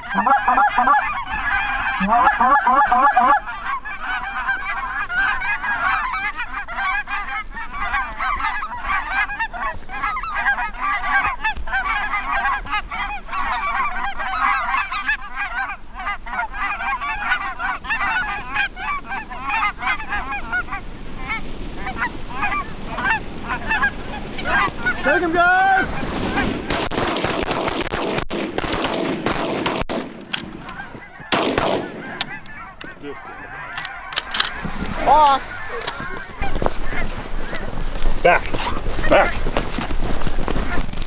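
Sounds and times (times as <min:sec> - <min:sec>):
flock of geese honking: 0:00.0 - 0:41.0.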